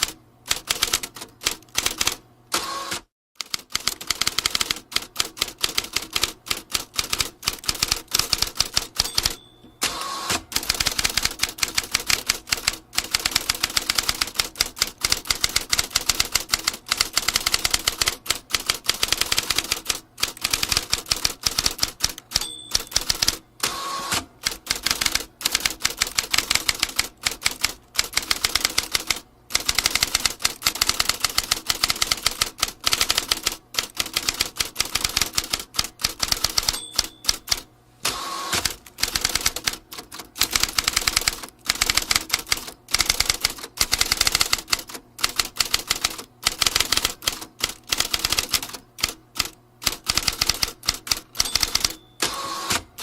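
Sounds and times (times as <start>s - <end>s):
typewriter key strikes: 3.4s - 23.4s, 24.4s - 37.6s, 38.6s - 53.0s
typewriter bell ringing: 8.3s - 10.8s, 22.3s - 23.4s, 36.2s - 37.6s, 50.3s - 52.8s.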